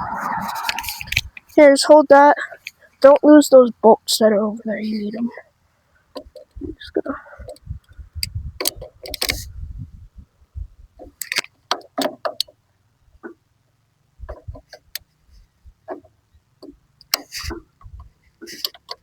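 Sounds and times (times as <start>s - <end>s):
low handling rumble: 0.0s - 1.7s.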